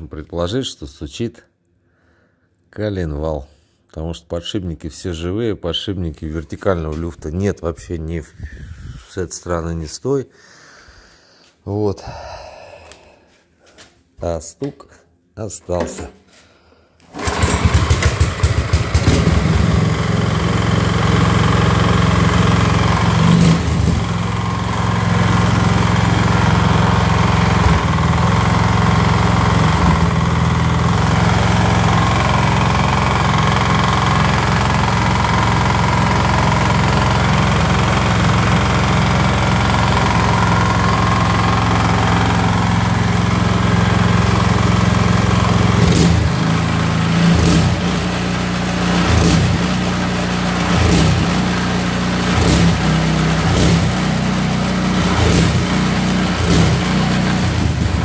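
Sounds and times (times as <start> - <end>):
snowblower engine running: 17.1 - 58.0
engine knock: 17.2 - 43.3, 55.0 - 58.0.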